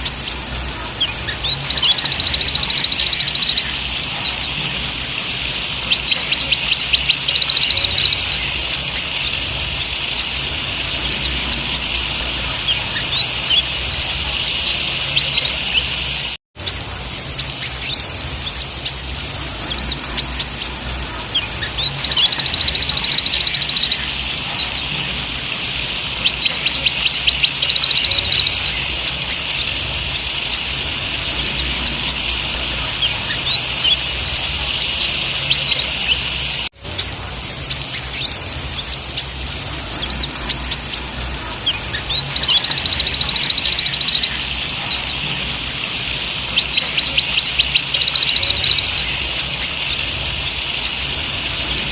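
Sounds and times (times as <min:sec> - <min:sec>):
bird high chirps and trills: 0:00.0 - 0:51.9.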